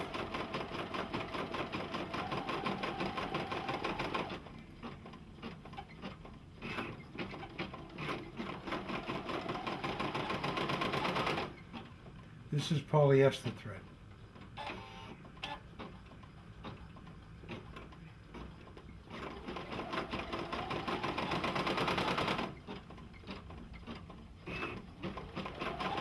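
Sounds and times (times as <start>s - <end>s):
embroidery machine stitching: 0.0s - 11.9s, 14.5s - 26.0s.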